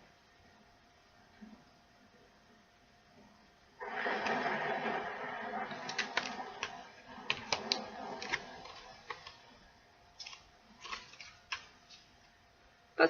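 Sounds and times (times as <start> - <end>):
photo prints clicking and tapping: 5.7 - 9.5, 10.2 - 12.1
soft paper rustles: 10.2 - 12.3.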